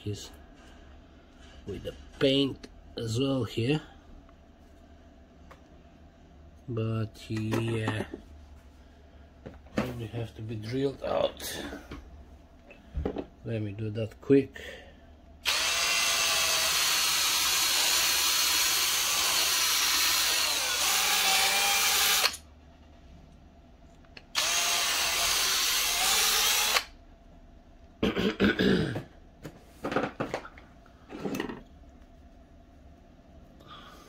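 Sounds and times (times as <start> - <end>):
small electric drill running: 15.4 - 22.4, 24.3 - 27.0.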